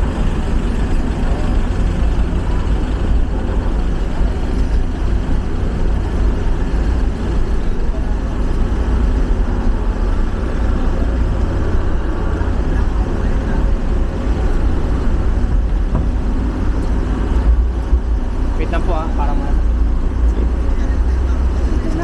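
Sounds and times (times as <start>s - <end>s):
vehicle engine rumbling: 0.0s - 22.0s.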